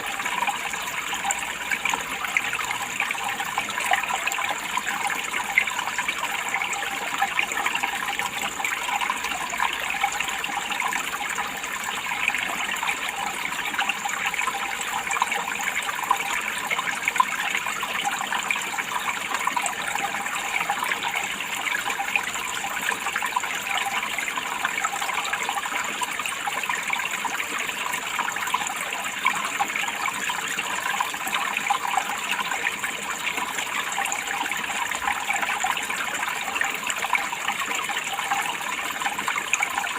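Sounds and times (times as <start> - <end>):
water trickling and splashing: 0.0 - 39.9.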